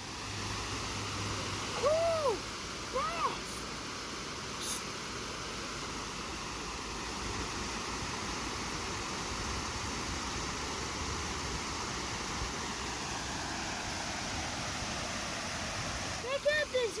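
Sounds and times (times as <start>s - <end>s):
flowing water rushing: 0.0s - 17.0s.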